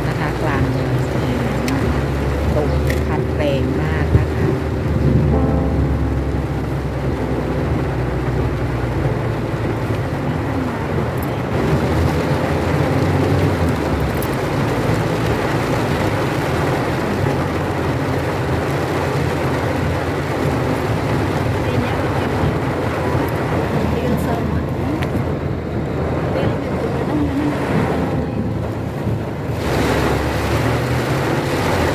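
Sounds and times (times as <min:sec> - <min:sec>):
vehicle engine running: 0:00.0 - 0:31.9.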